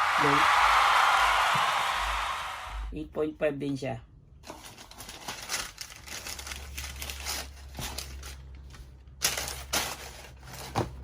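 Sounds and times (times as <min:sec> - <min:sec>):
packaging rustling and crinkling: 0:04.4 - 0:11.0.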